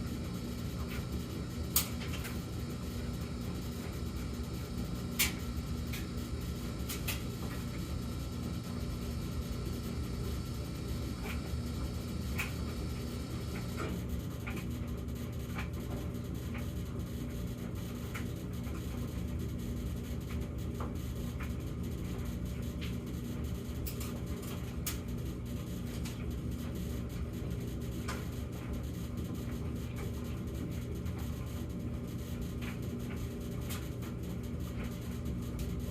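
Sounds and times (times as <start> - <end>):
thin steady hum: 0.0 - 14.7
dryer drum rumbling: 0.0 - 35.9.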